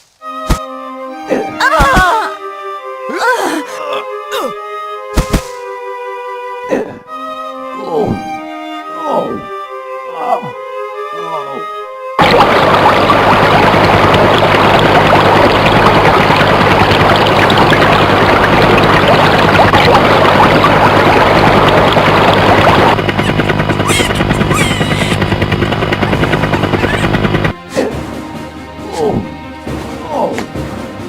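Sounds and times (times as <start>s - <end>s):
engine-like drone: 12.2s - 31.0s
low hum: 12.2s - 31.0s.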